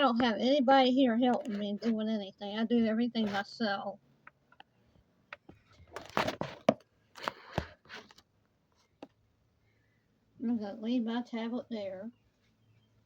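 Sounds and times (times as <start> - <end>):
tablet handling rustling: 5.3 - 9.2.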